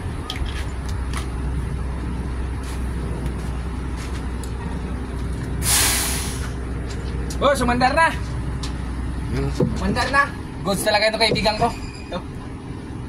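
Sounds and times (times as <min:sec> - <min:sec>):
diesel truck engine idling: 0:00.0 - 0:13.0
loud air hissing: 0:05.6 - 0:06.6.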